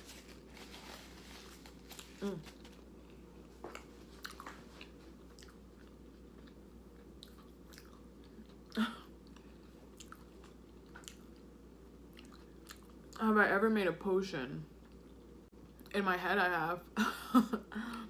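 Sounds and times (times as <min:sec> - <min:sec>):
chewing crunchy chips: 0:00.1 - 0:13.2.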